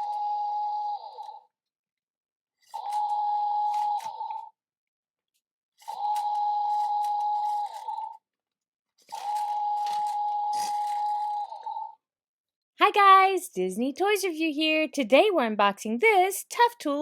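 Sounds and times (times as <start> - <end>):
toy power tool electronic whirring: 2.6 - 4.5, 5.8 - 8.2, 9.0 - 11.7.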